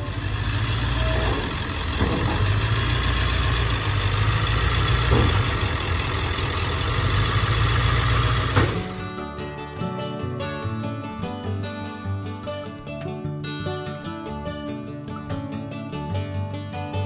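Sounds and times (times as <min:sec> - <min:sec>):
diesel truck engine running: 0:00.0 - 0:09.3
faint knocks: 0:00.6 - 0:06.4.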